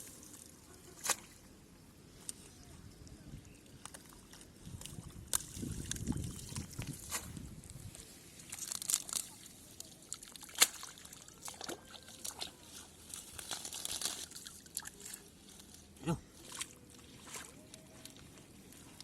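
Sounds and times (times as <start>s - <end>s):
hands splashing in muddy water: 8.5s - 15.8s, 16.4s - 18.6s
sharp splash: 10.2s - 12.5s.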